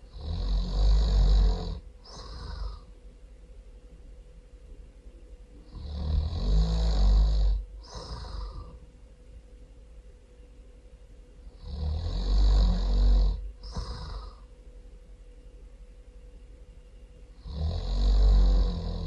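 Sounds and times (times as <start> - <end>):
person snoring loudly: 0.1 - 2.9, 5.7 - 8.8, 11.5 - 14.5, 17.4 - 19.0.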